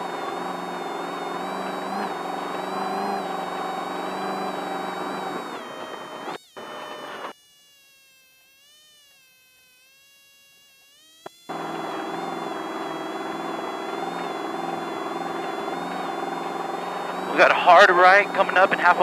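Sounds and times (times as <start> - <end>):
buzzing whine: 0.0 - 19.0
vehicle engine rumble: 11.5 - 19.0.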